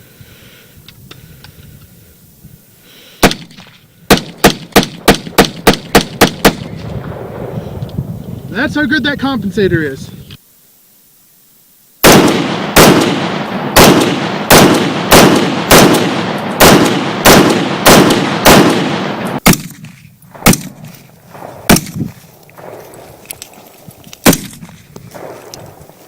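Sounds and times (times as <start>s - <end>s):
rifle shots echoing: 3.2s - 7.7s, 12.0s - 23.6s, 24.2s - 26.0s.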